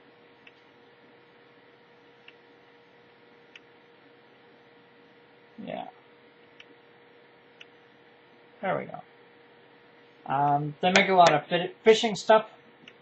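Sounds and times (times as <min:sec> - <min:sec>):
low hum with faint tone: 0:00.0 - 0:13.0
multitool clicks: 0:02.2 - 0:02.4.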